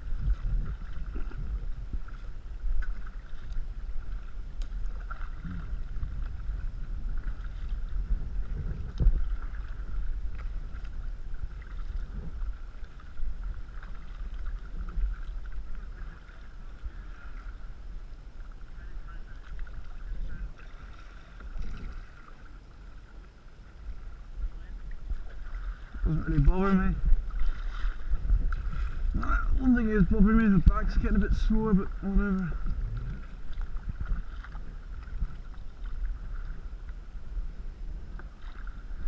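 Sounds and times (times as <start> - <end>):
water sloshing around paddle: 0.0 - 39.0
wind rumble on microphone: 0.0 - 39.0.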